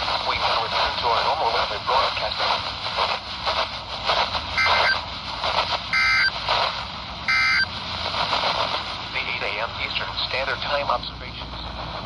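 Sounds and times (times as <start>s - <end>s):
radio hiss: 0.0s - 12.0s
short digital data bursts: 4.6s - 5.0s, 5.9s - 6.4s, 7.3s - 7.7s.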